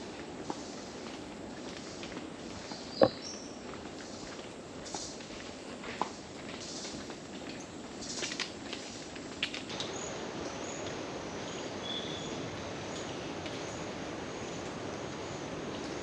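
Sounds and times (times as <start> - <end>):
footsteps on boardwalk: 0.0 - 9.6
rainforest hiss: 0.0 - 16.0.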